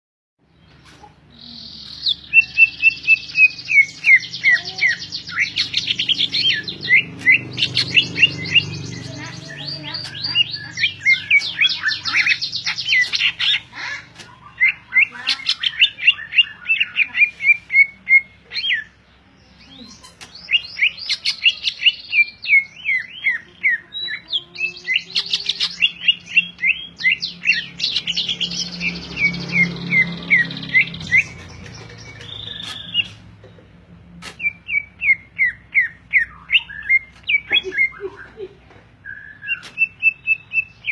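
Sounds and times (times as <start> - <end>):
bird singing whistles and trills: 34.4 - 38.4, 39.0 - 40.9.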